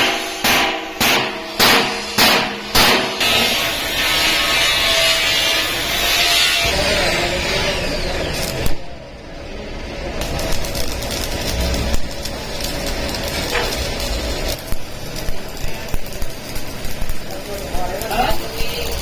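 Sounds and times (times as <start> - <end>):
hammer striking sheet iron: 0.0 - 5.6
power tool running on metal: 1.9 - 9.0, 10.2 - 19.0.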